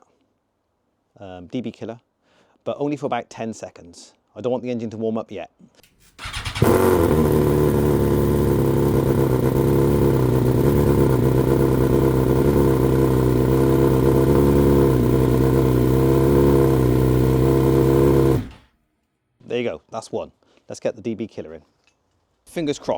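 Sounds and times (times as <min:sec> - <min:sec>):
motorcycle engine high idle: 0:06.2 - 0:18.6.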